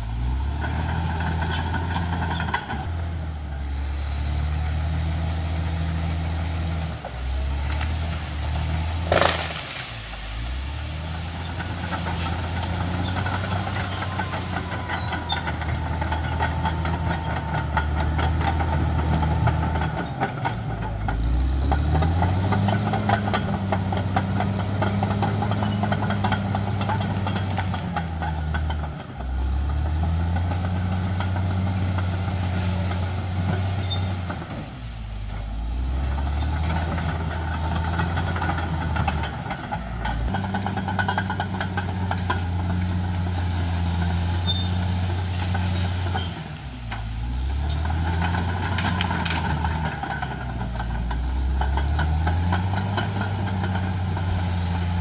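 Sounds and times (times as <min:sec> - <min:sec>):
bulldozer diesel engine under load: 0:00.0 - 0:55.0
clicks and clatter: 0:09.0 - 0:09.9, 0:45.1 - 0:55.0.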